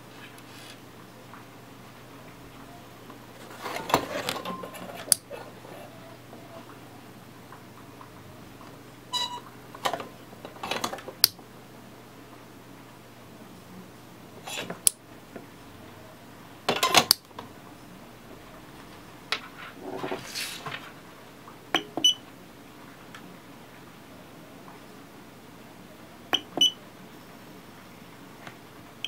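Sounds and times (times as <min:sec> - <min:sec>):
electronic beeps: 0:09.1 - 0:09.4.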